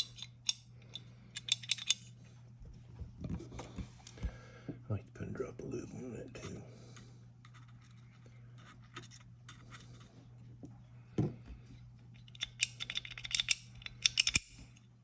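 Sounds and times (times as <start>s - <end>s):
metal parts scratching: 0.0s - 0.6s
metallic clicks: 0.0s - 2.1s, 12.2s - 14.9s.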